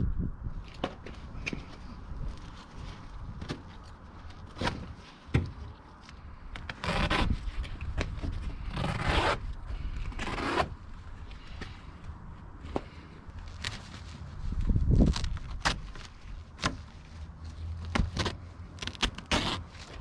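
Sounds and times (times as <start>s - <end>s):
plastic scraping rubs: 13.4s - 20.0s.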